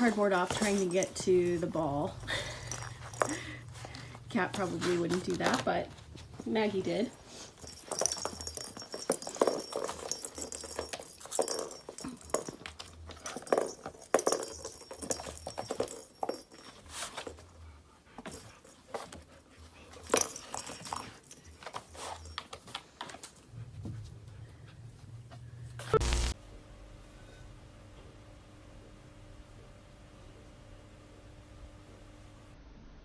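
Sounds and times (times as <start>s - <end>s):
dog pawing at a rattling toy: 2.6s - 17.4s.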